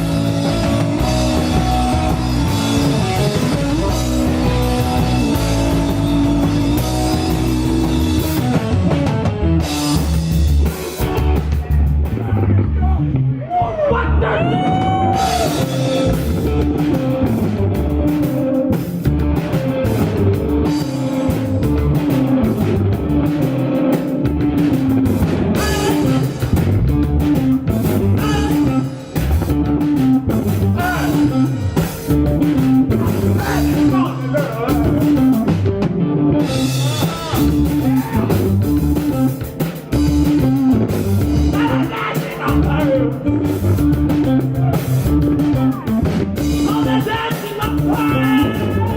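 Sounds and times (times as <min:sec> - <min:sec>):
repeating bass line: 0:00.0 - 0:13.2, 0:14.0 - 0:48.9
rock band playing: 0:00.0 - 0:48.9
person singing: 0:00.2 - 0:08.5, 0:28.2 - 0:28.9, 0:32.9 - 0:35.0, 0:41.4 - 0:43.4, 0:46.5 - 0:48.9.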